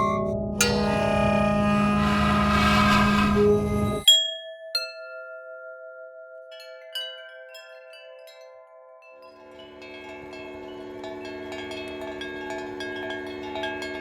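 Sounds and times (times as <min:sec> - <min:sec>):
low metallic hum: 0:00.0 - 0:04.1, 0:09.4 - 0:14.0
metal object struck ringing: 0:00.0 - 0:04.1
rough metallic drone: 0:00.0 - 0:04.1, 0:09.4 - 0:14.0.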